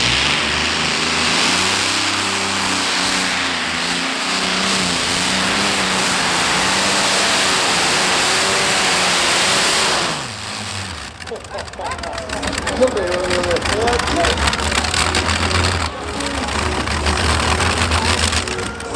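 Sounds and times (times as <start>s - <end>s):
tractor engine roaring under load: 0.0s - 18.9s.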